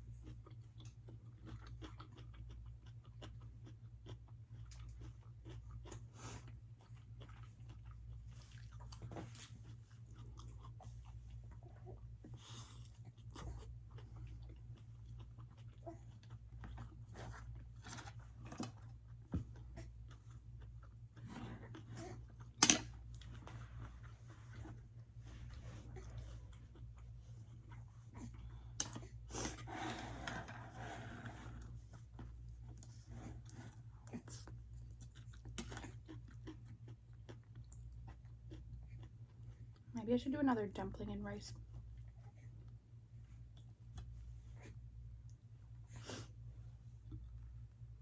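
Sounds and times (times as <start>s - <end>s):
wet chewing clicks and smacks: 0.0s - 11.6s, 12.7s - 23.5s, 34.3s - 39.9s
steady low hum: 0.0s - 48.0s.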